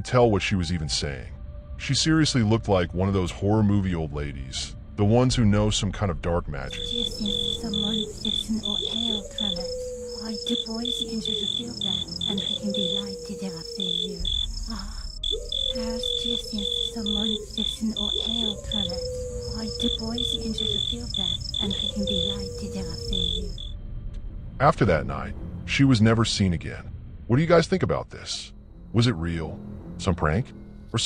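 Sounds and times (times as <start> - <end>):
crickets chirping: 6.6 - 23.8.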